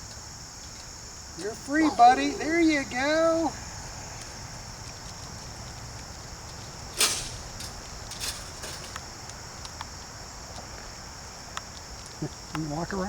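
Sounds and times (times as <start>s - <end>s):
insects chirring: 0.0s - 13.0s
sharp clatter: 6.9s - 9.0s.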